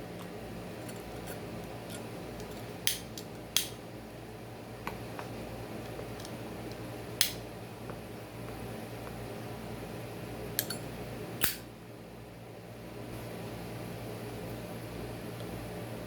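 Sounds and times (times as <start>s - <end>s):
steady low hum: 0.0s - 16.0s
lighter clicking: 2.8s - 3.8s, 7.2s - 7.4s, 11.4s - 11.7s
lighter loud snap: 2.8s - 3.8s, 7.2s - 7.4s, 11.4s - 11.7s.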